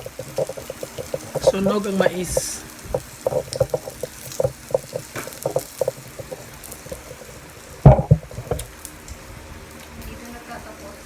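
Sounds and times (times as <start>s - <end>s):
food sizzling on grill pan: 0.0s - 11.0s
loud knock: 7.8s - 8.2s.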